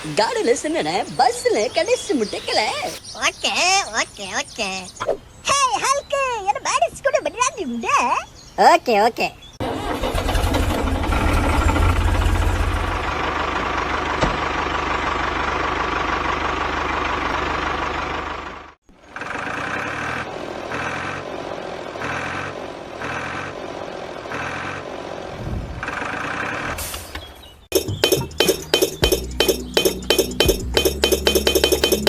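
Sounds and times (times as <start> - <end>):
engine running with low rumble: 9.6 - 27.0, 27.8 - 32.0.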